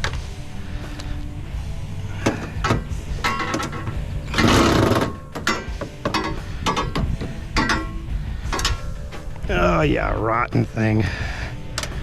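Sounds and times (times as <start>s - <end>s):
metal parts clanking: 2.2s - 9.2s
power screwdriver running: 4.4s - 5.2s.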